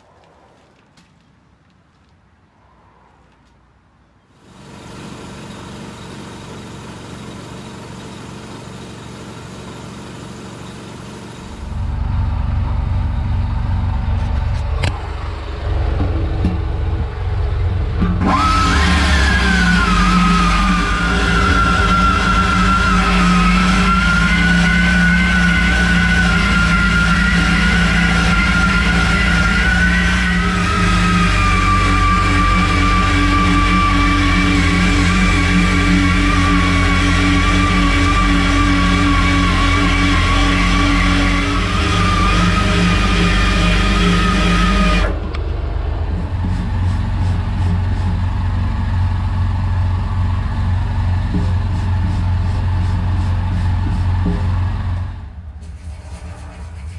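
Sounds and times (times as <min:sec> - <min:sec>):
pneumatic tool whine: 0:04.4 - 0:12.1, 0:17.9 - 0:55.2
low compressor hum: 0:04.7 - 0:55.4.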